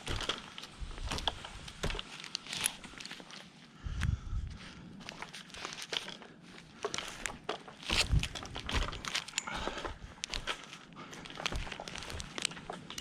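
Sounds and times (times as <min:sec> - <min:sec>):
handling clicks and scrapes: 0:00.0 - 0:03.6, 0:05.0 - 0:13.0.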